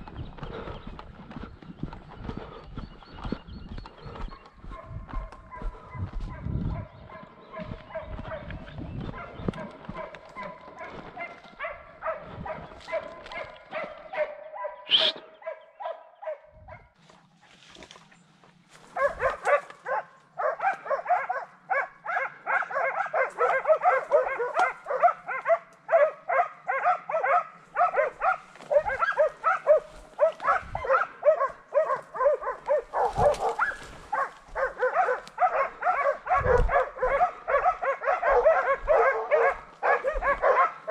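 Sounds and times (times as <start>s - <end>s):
dogs barking: 2.1s - 17.0s, 18.7s - 40.9s
dogs howling: 19.0s - 40.9s.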